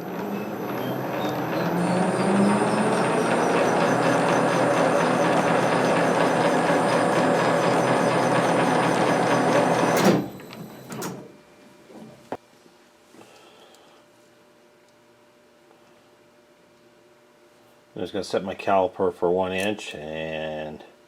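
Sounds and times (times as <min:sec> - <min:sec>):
metal lathe gearing clattering: 0:00.1 - 0:10.2.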